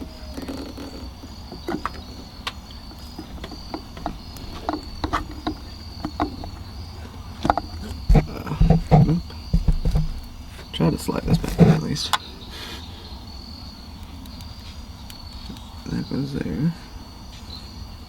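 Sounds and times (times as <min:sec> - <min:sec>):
louder knocks: 0:08.1 - 0:10.3, 0:11.2 - 0:11.9.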